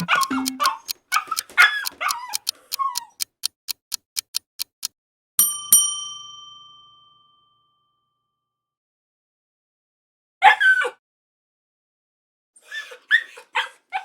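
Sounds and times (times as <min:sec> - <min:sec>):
clock-like ticking: 0:00.0 - 0:05.0
bell dings: 0:05.4 - 0:08.2
dog whimpering and yipping: 0:12.6 - 0:14.0.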